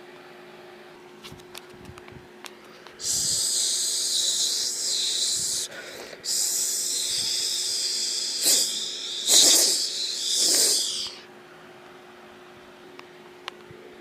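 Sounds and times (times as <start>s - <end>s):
person hissing: 3.0s - 11.2s.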